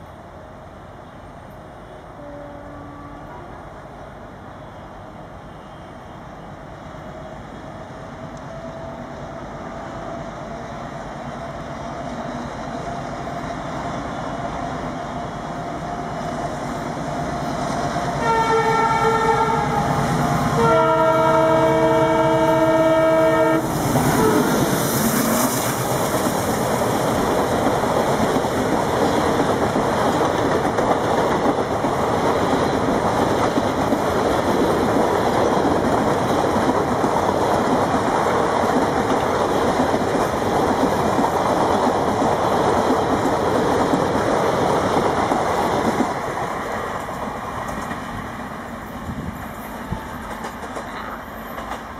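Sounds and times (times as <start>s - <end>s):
train horn blasts: 2.0s - 3.6s, 18.2s - 24.6s
train wheels clattering: 23.6s - 48.2s, 49.3s - 51.9s.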